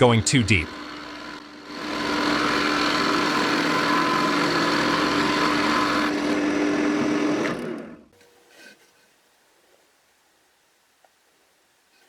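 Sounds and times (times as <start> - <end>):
drill press humming: 0.0 - 8.3
drill bit cutting into wood: 0.6 - 7.8.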